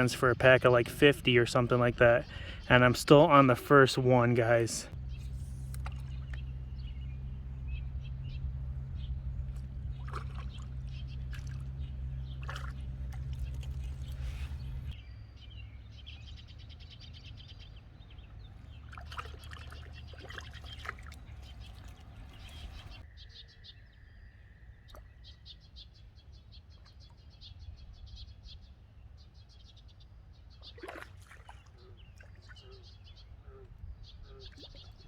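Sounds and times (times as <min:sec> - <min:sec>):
songbirds chirping: 0:00.0 - 0:35.0
low rumble: 0:04.9 - 0:15.0.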